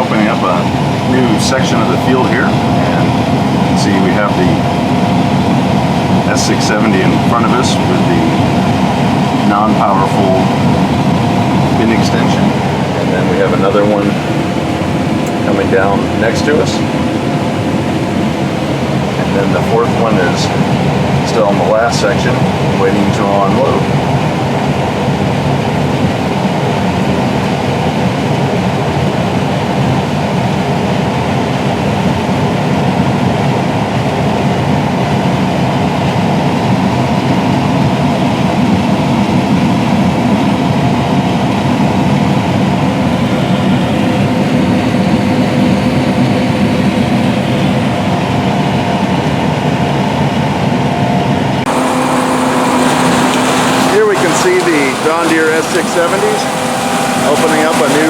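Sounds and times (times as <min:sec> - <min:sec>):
combine harvester droning: 0:00.0 - 0:58.0.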